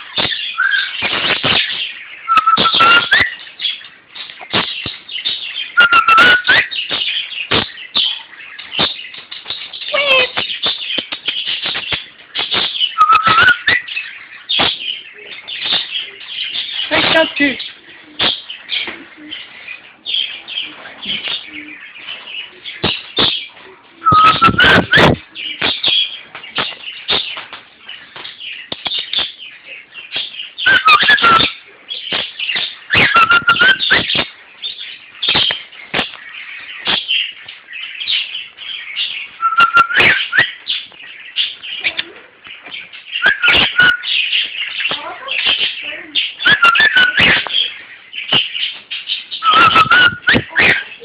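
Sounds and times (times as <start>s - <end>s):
pet bird chirping and whistling: 0.2s - 3.5s, 4.6s - 9.0s, 9.8s - 14.9s, 22.8s - 27.4s, 30.0s - 36.2s, 36.8s - 42.0s, 42.8s - 51.0s.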